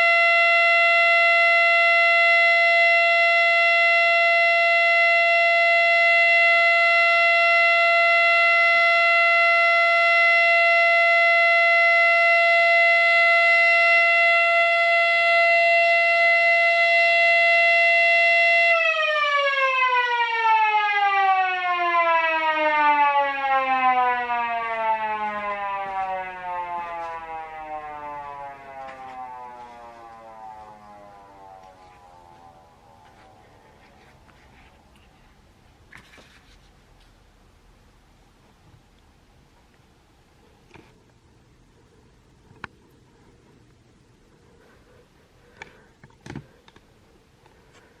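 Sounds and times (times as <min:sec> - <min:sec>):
siren winding down: 0:00.0 - 0:35.0.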